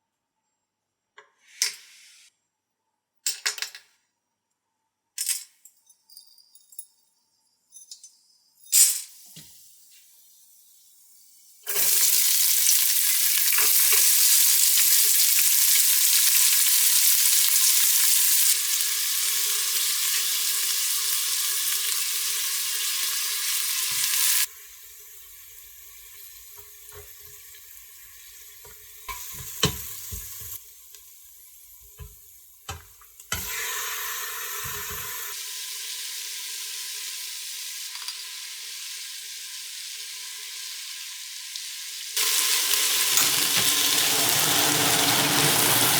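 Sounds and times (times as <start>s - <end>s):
food sizzling in hot oil: 9.1s - 45.9s.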